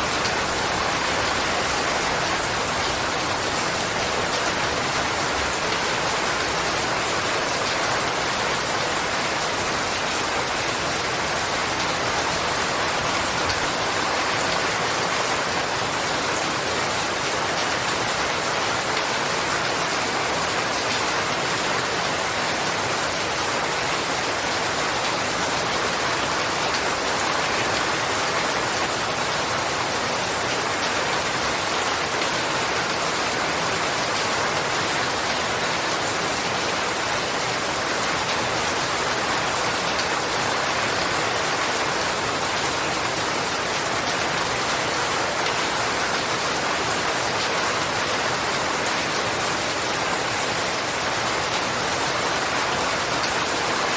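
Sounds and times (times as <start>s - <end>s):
steady rain falling: 0.0s - 53.9s.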